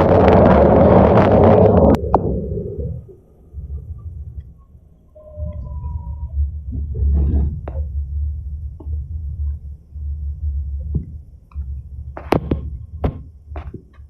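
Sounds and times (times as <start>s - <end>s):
train rumbling: 0.0s - 14.0s
high squealing tones: 4.6s - 6.6s
sharp clicks and knocks: 10.8s - 14.0s.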